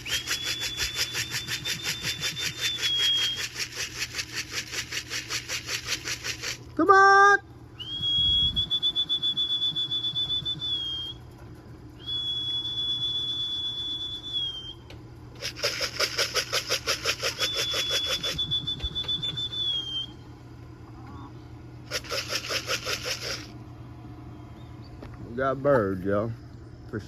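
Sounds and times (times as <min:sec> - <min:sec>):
person whistling high notes: 0:00.0 - 0:03.7, 0:07.8 - 0:11.2, 0:12.0 - 0:14.8, 0:17.2 - 0:20.2
fast even rattling: 0:00.0 - 0:06.7, 0:15.4 - 0:18.5, 0:21.9 - 0:23.5.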